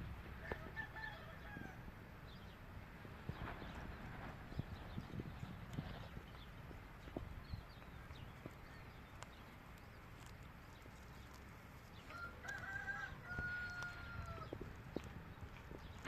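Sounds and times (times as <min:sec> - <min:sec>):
rooster crowing: 0:00.4 - 0:01.9, 0:12.1 - 0:14.6.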